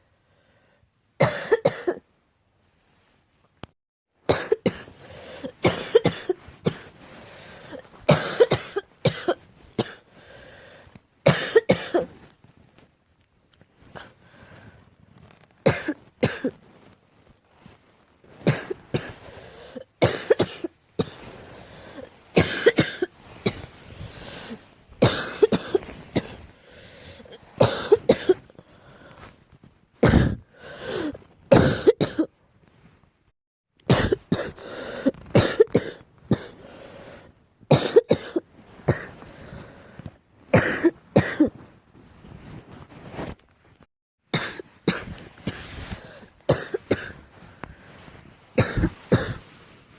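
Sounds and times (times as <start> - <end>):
person barking cough: 1.2 - 2.0, 8.1 - 10.0, 30.0 - 30.4, 31.5 - 32.3, 33.9 - 34.6, 35.4 - 36.5, 37.7 - 39.1, 40.6 - 41.5, 44.4 - 45.1, 46.5 - 47.2, 48.6 - 49.4.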